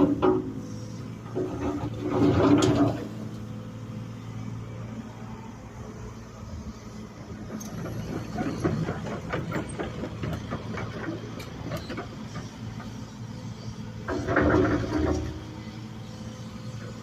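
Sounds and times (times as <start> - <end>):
clanks and knocks: 0.0 - 0.7, 1.3 - 3.2, 7.6 - 13.0, 14.0 - 15.5
excavator engine running: 0.0 - 17.0.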